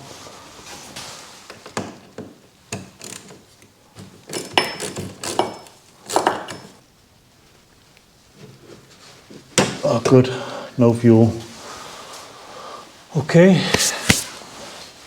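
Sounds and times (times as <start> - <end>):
hand tools and metal parts clinking: 4.0 - 6.8.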